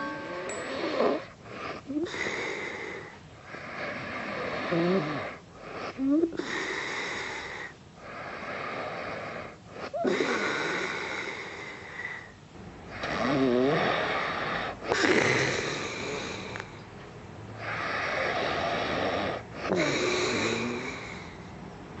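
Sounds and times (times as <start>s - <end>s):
man snoring: 13.0s - 16.6s, 17.6s - 21.3s.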